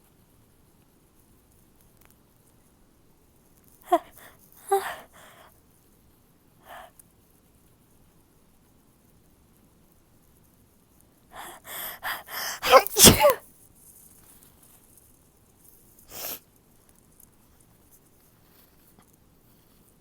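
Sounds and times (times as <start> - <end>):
sniff: 3.9 - 5.4, 11.4 - 13.4, 16.1 - 16.4
woman sneezing: 3.9 - 5.4, 11.4 - 13.4
short catching breaths: 3.9 - 5.5, 11.4 - 13.4.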